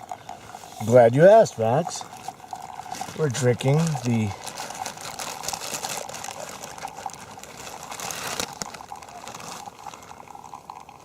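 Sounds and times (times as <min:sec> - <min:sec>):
hot liquid hissing and bubbling: 0:00.0 - 0:11.0
small crackles: 0:02.2 - 0:10.9.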